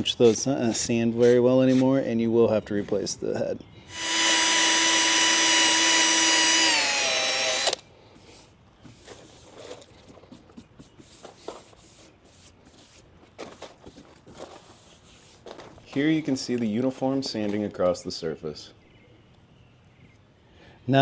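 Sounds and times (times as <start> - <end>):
power drill sanding plastic: 3.9 - 7.8
faint handling noises: 8.1 - 17.8.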